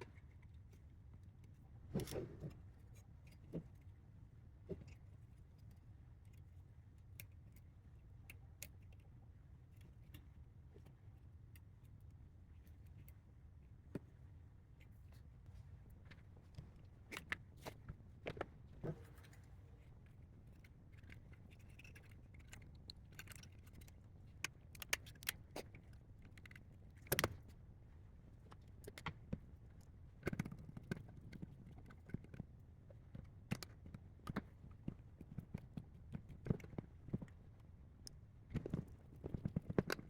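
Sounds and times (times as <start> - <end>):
small parts clicking and rattling: 20.4 - 27.5.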